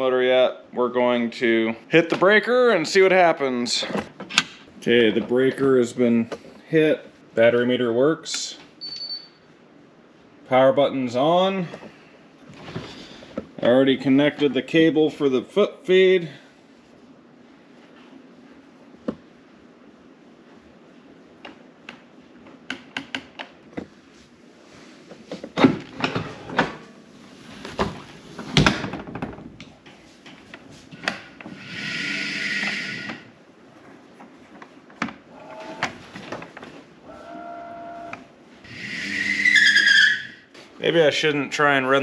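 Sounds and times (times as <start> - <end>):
brief steady tone: 8.8 - 9.4, 37.1 - 38.2
electric motor whirring: 31.6 - 33.2, 37.1 - 39.7.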